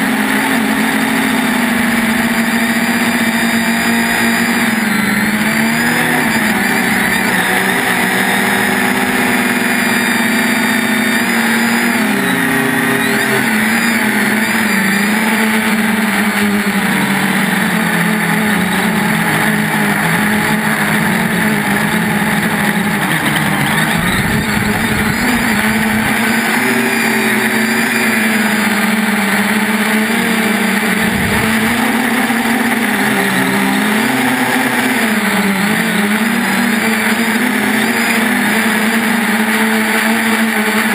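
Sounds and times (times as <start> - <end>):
drone propellers buzzing: 0.0 - 40.9
low rumbles: 18.4 - 26.3.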